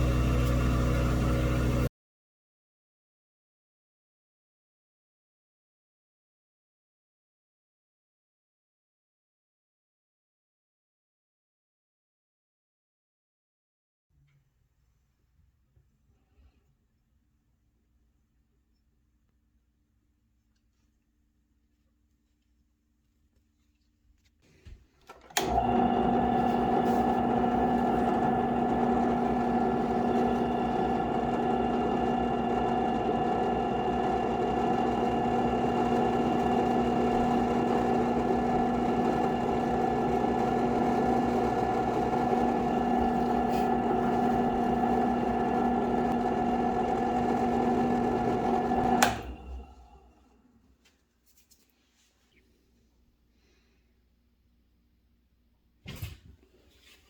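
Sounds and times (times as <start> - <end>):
electric lathe motor whining: 25.4 - 49.9.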